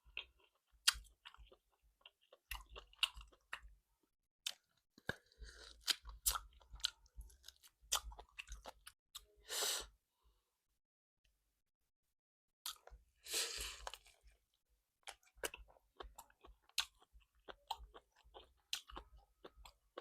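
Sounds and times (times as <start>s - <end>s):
chewing and biting food: 0.1s - 3.7s, 4.4s - 9.3s, 13.6s - 14.4s, 15.0s - 20.0s.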